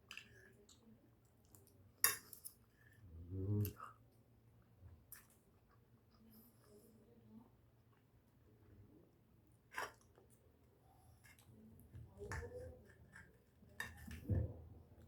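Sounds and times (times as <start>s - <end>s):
faint chewing and mouth noises: 0.0s - 15.0s
cutlery clicking on a plate: 2.0s - 2.6s.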